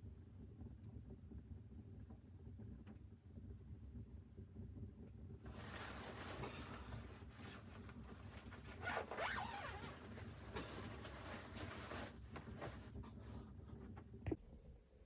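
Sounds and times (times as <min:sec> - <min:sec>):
faint rustling and handling: 0:05.5 - 0:14.2.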